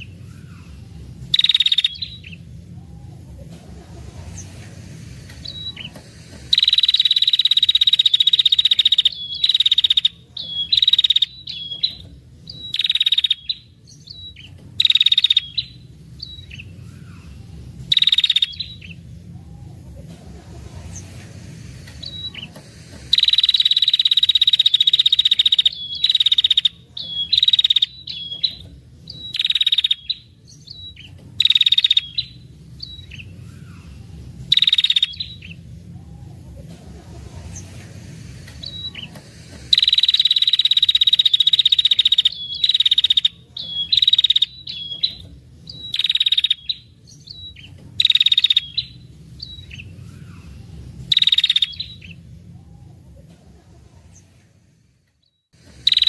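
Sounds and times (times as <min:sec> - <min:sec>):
bird rattling trills: 0:01.3 - 0:02.4, 0:04.2 - 0:16.7, 0:20.9 - 0:30.2, 0:34.5 - 0:35.6, 0:38.6 - 0:46.8, 0:55.7 - 0:56.0.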